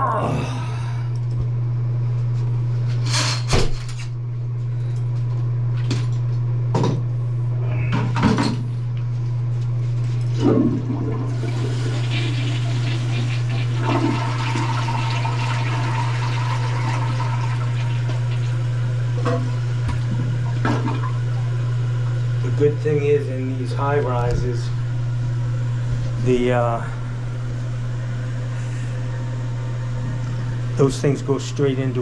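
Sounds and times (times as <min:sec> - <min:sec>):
toilet water rushing: 0:10.4 - 0:22.8.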